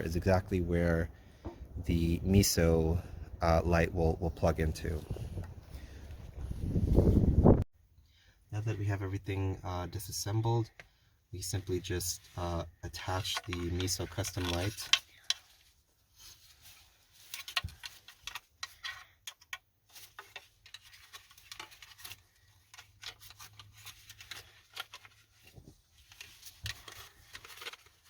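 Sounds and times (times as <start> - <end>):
plastic parts clicking and rubbing: 12.4 - 28.0.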